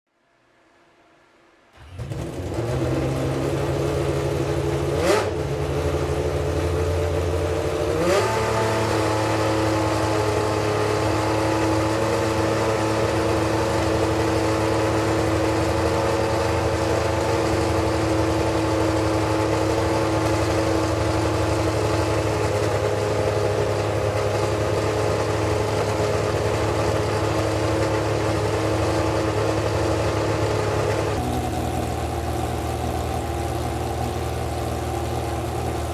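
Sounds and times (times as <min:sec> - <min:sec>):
racing car engine idling: 0:01.9 - 0:08.1, 0:08.8 - 0:35.9.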